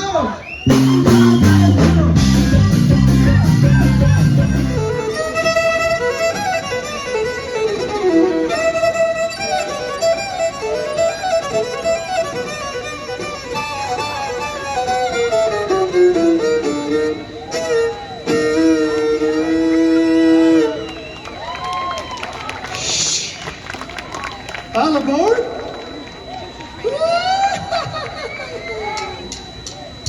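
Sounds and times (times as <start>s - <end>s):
heavy bass: 0.7s - 5.1s
violin melody with gliding notes: 2.2s - 20.8s.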